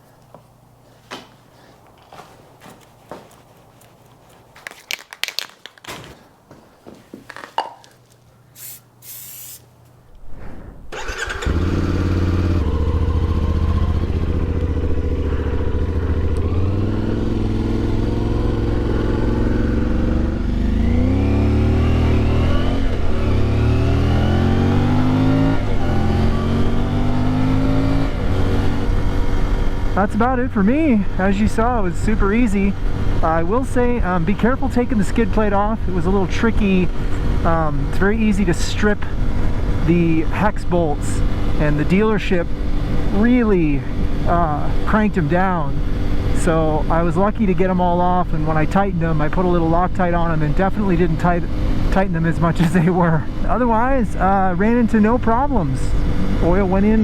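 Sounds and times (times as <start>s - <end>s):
motorcycle engine running: 11.2s - 30.0s.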